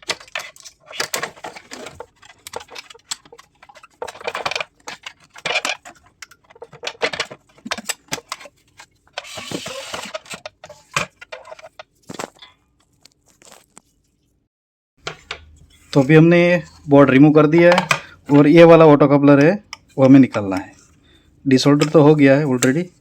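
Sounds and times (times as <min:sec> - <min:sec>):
rustling scrape: 0:08.2 - 0:14.4, 0:15.0 - 0:17.2.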